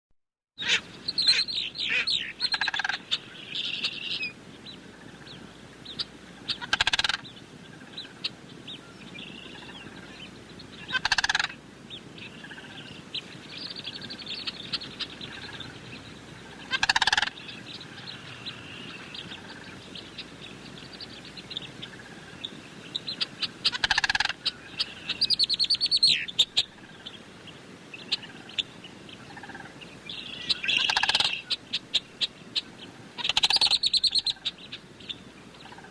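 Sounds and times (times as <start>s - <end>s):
cranes rattling calls: 0.6s - 8.4s, 9.3s - 11.6s, 13.9s - 20.3s, 23.1s - 27.2s, 28.1s - 31.6s, 32.2s - 34.7s.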